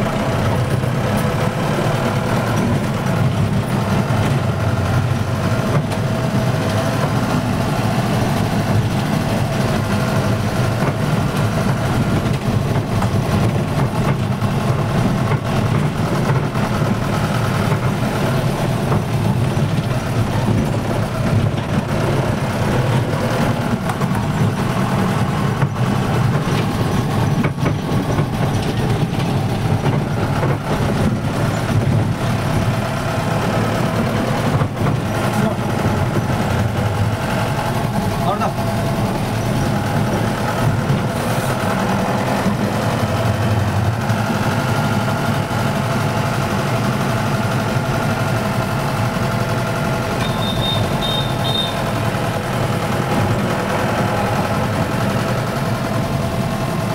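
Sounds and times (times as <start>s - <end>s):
vehicle engine running: 0.0s - 56.9s.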